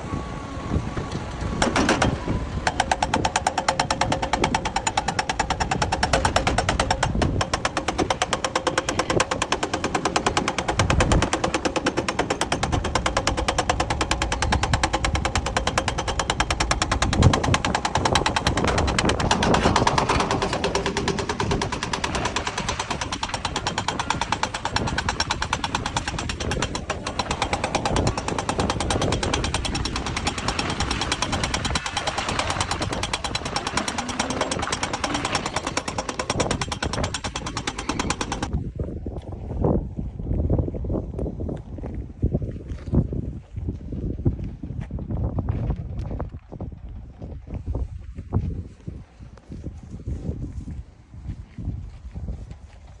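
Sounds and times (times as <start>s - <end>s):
excavator engine running: 0.0s - 38.6s
hydraulic breaker hammering rock: 0.5s - 38.6s.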